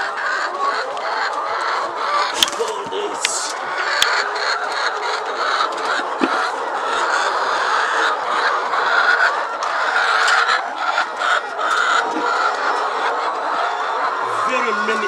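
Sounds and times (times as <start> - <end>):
hens clucking and chattering: 0.0 - 15.0.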